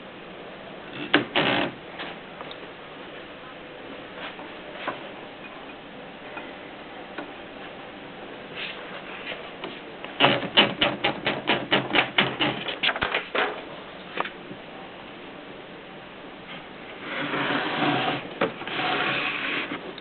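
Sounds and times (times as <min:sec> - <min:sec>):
typewriter keystrikes: 0:10.2 - 0:13.1.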